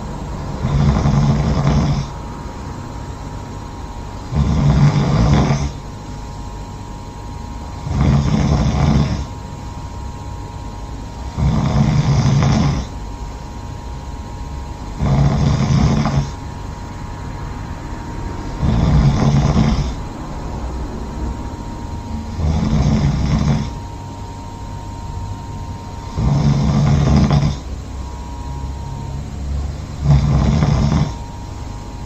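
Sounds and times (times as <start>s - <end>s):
person snoring: 0.0s - 2.2s, 4.3s - 5.8s, 7.8s - 9.3s, 11.3s - 13.0s, 15.0s - 16.4s, 18.4s - 23.9s, 25.6s - 27.7s, 30.0s - 31.3s.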